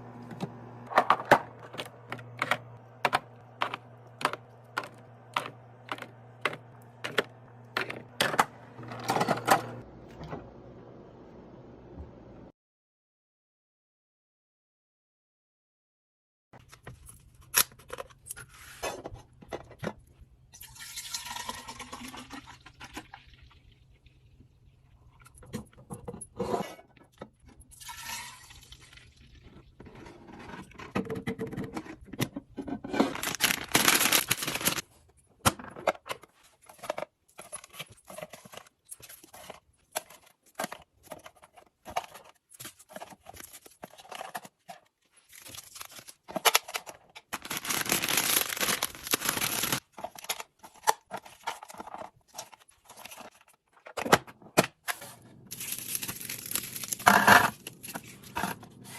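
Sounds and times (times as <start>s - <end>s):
containers clicking and clinking: 0.3s - 9.8s, 32.7s - 34.8s, 46.3s - 53.4s
plastic packaging crinkling: 32.9s - 34.9s, 45.2s - 50.3s, 55.5s - 58.4s.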